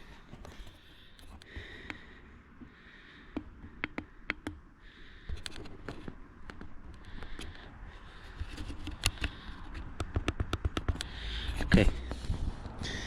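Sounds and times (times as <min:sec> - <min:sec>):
light scraping and rustling: 0:00.0 - 0:01.5
sharp clicks: 0:03.3 - 0:04.6, 0:08.6 - 0:11.2.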